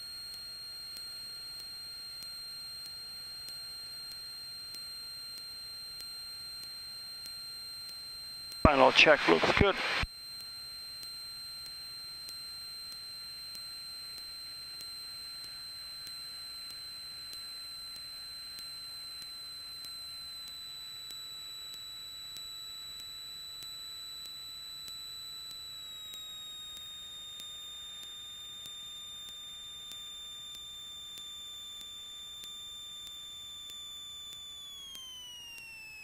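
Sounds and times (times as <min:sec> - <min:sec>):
high-pitched electrical whine: 0:08.7 - 0:10.1.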